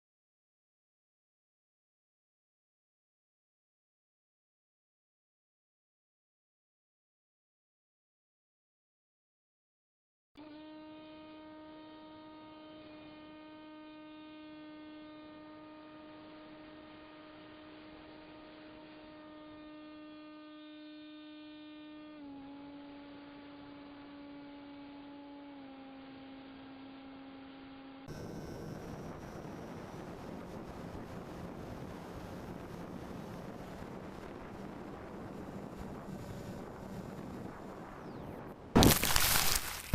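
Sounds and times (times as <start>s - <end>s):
electric motor humming: 10.4s - 33.8s.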